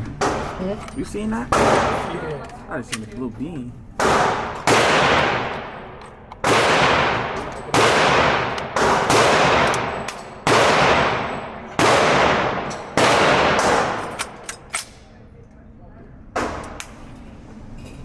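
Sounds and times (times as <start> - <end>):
echoing gunshots: 1.5 - 2.2, 4.0 - 14.7.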